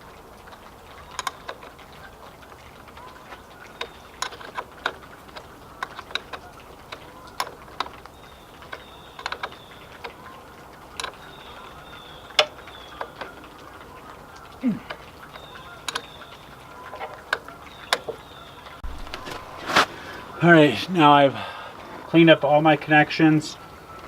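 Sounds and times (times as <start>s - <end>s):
hand tools clicking on metal: 0.0s - 14.0s, 14.8s - 18.2s.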